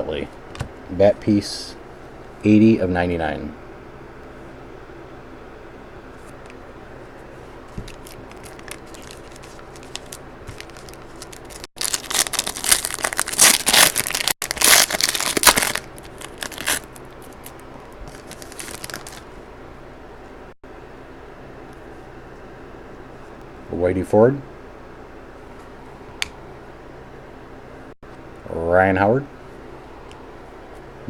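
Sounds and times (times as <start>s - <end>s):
cards rustling and clicking: 7.7s - 19.2s
foil wrapper tearing and crinkling: 7.8s - 19.3s.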